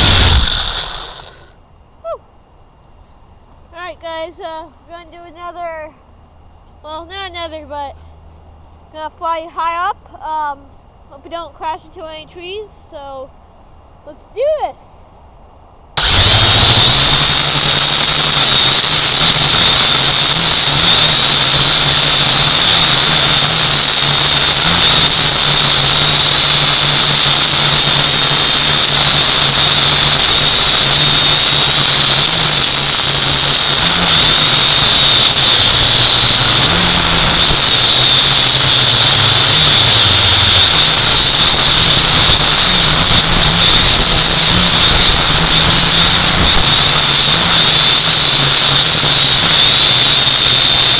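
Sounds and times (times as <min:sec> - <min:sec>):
drone propellers whining: 0:00.0 - 0:01.5, 0:16.0 - 0:50.9.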